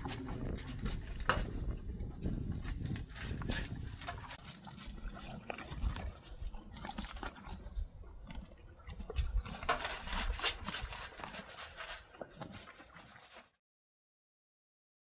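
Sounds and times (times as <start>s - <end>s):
low rumbles: 0.0s - 10.2s
horses rustling and clicking: 0.0s - 13.6s.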